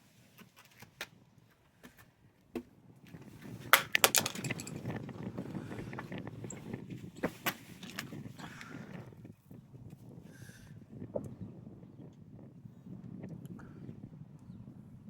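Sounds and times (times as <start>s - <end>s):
handling clicks and knocks: 3.8s - 5.0s, 7.2s - 8.2s.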